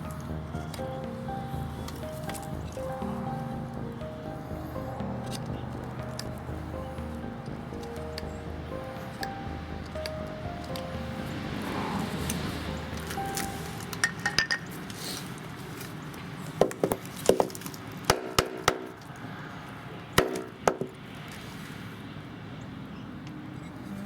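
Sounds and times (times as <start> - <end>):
faint background music: 0.0 - 14.9.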